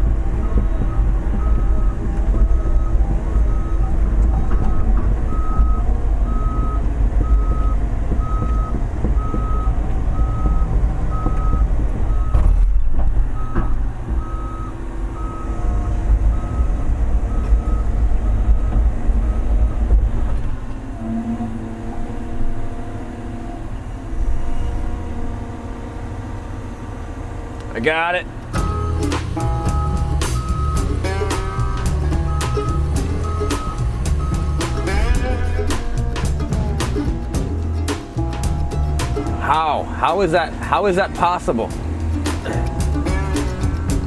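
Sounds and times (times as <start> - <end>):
travel alarm beeping: 0.0 - 12.5, 13.4 - 19.9, 28.6 - 35.9
excavator diesel engine: 0.0 - 44.0.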